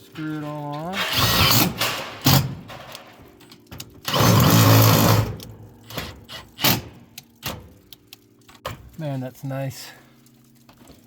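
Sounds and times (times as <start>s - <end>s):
power drill driving a screw: 4.1s - 5.3s.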